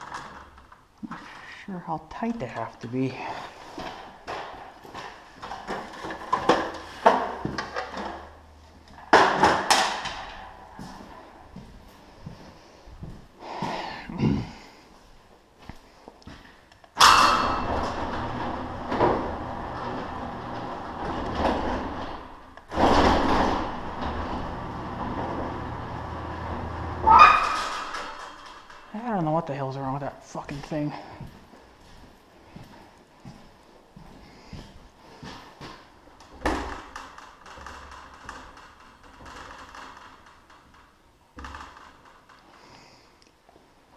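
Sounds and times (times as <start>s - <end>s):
metal hardware clanking and rattling: 17.0s - 24.4s, 27.0s - 28.9s.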